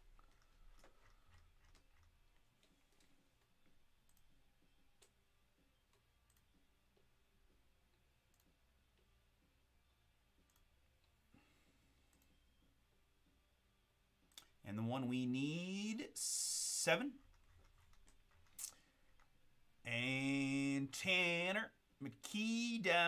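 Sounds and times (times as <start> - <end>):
computer mouse clicks: 0.2 - 4.3, 5.8 - 6.6, 8.3 - 9.1, 10.4 - 11.2, 12.1 - 12.4, 17.2 - 19.3.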